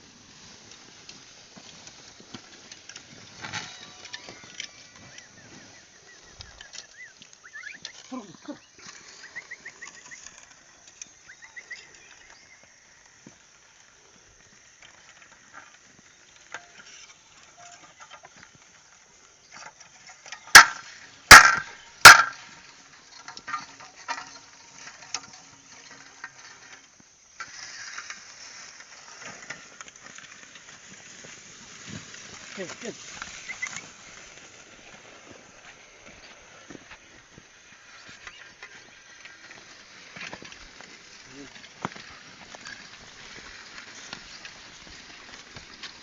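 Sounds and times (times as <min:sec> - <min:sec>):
faint bird chirps: 0:03.5 - 0:13.2, 0:32.6 - 0:34.2
loud sharp cracks: 0:20.5 - 0:22.6.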